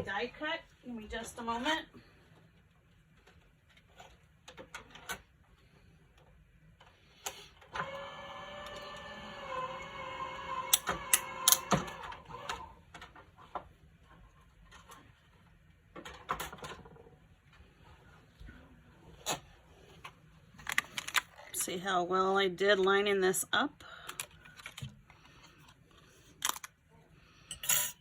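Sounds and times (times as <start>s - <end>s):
die-cutting machine whirring: 7.8s - 12.8s.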